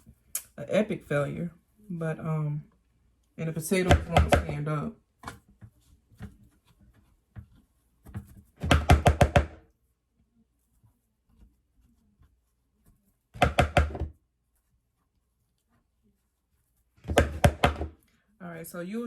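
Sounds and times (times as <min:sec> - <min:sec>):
utensil knocking against dish: 0:08.6 - 0:09.6, 0:13.4 - 0:14.1, 0:17.1 - 0:18.0.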